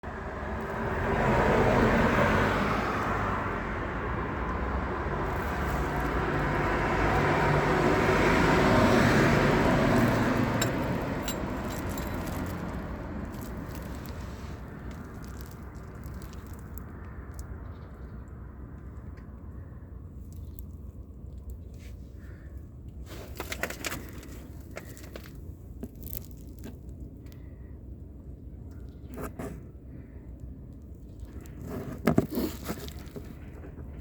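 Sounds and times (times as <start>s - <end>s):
engine running: 0.1s - 16.2s.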